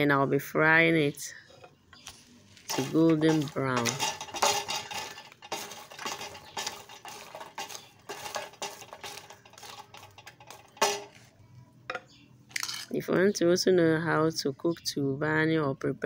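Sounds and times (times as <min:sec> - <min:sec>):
utensil scraping a pot: 0:02.7 - 0:11.2.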